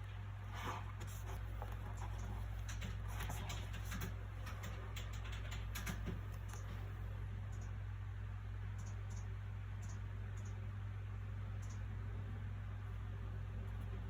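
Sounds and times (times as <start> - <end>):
low background hum: 0.0 - 14.0
book paper rustling: 0.4 - 4.0.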